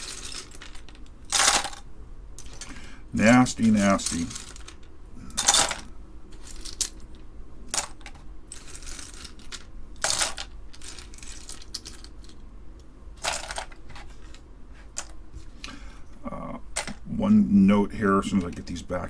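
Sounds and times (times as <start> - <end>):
keyboard parts clicking and clattering: 3.6 - 7.1, 13.2 - 15.2, 16.7 - 17.0.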